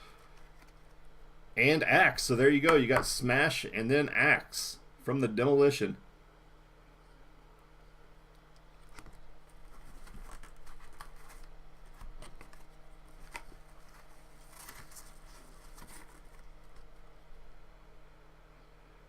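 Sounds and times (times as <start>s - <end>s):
cards rustling in plastic holders: 8.8s - 17.0s.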